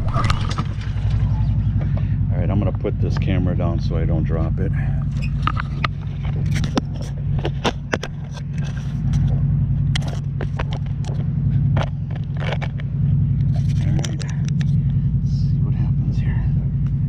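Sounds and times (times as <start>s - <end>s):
engine running: 0.0s - 17.0s
camera handling knocks and scrapes: 5.3s - 9.4s, 10.0s - 14.8s.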